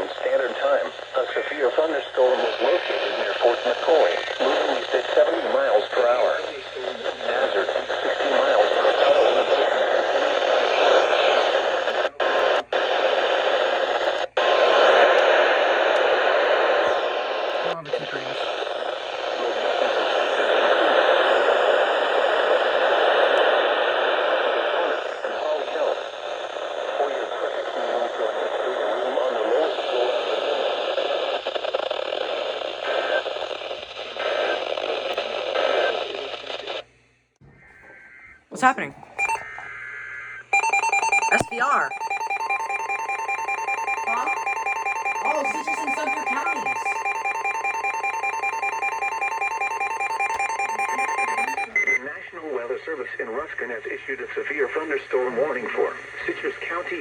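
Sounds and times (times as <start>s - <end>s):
radio static hissing: 0.0s - 36.8s.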